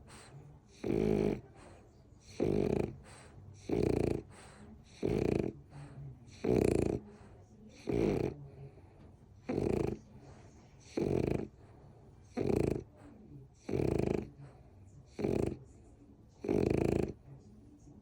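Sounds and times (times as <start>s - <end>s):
soft breathing: 0.0s - 0.8s, 1.4s - 18.0s
loud snoring: 0.7s - 1.6s, 2.2s - 5.7s, 6.3s - 7.0s, 7.8s - 8.4s, 9.4s - 10.0s, 10.8s - 11.6s, 12.3s - 12.9s, 13.6s - 14.4s, 15.1s - 15.6s, 16.4s - 17.2s.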